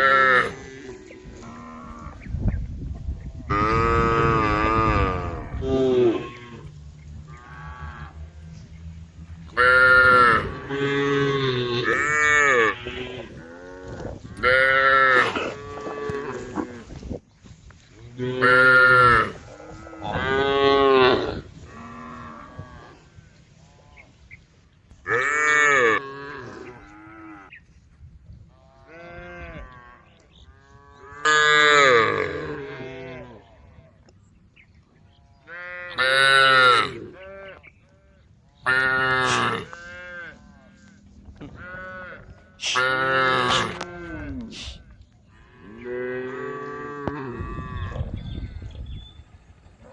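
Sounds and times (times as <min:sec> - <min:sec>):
cows mooing: 0:00.0 - 0:02.2, 0:03.4 - 0:17.0, 0:18.1 - 0:24.1, 0:25.1 - 0:27.6, 0:28.6 - 0:33.8, 0:35.2 - 0:48.7.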